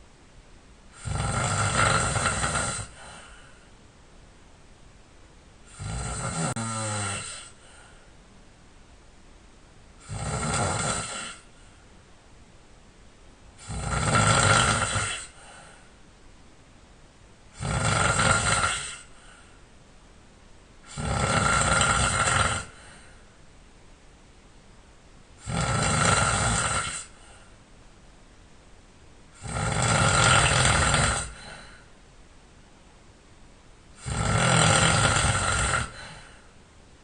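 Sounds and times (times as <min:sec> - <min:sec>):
man snoring: 0:00.9 - 0:03.4, 0:05.7 - 0:07.7, 0:10.0 - 0:11.5, 0:13.6 - 0:15.6, 0:17.5 - 0:19.3, 0:20.9 - 0:23.0, 0:25.4 - 0:27.3, 0:29.4 - 0:31.8, 0:34.0 - 0:36.4
quiet breathing: 0:00.9 - 0:03.9, 0:05.6 - 0:08.4, 0:10.0 - 0:12.1, 0:13.5 - 0:16.2, 0:17.5 - 0:19.9, 0:20.8 - 0:23.6, 0:25.4 - 0:27.8, 0:29.3 - 0:32.2, 0:33.9 - 0:36.8.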